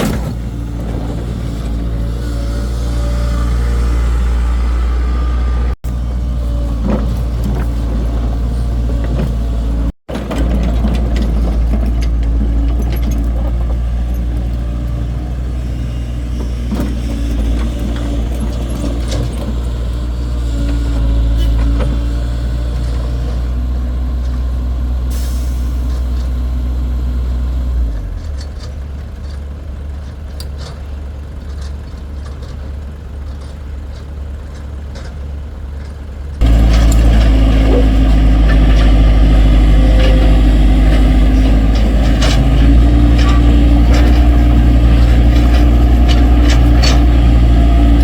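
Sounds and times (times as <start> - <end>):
engine droning: 0.0 - 48.0
knocks and clanks: 6.6 - 14.6, 31.4 - 48.0.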